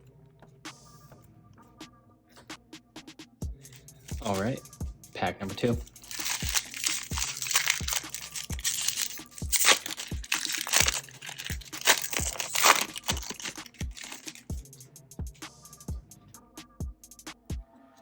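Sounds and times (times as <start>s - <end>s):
music with kick-drum beat: 2.4s - 17.7s
wrapper tearing and crinkling: 5.8s - 14.5s.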